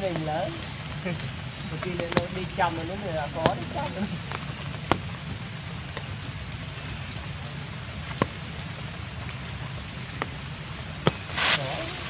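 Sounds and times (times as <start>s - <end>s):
steady rain falling: 0.0s - 12.0s
sharp taps: 1.8s - 5.1s.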